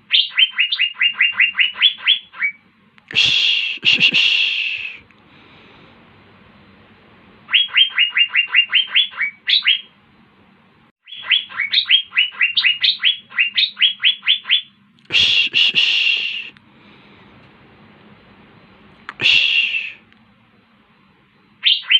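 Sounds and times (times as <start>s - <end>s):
bird whistling rising notes: 7.5s - 9.9s, 11.0s - 14.8s.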